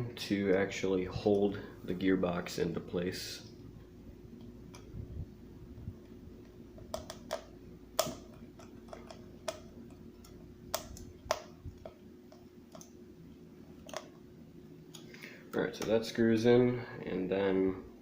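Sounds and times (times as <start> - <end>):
screwdriver clicks and taps: 6.8 - 12.9.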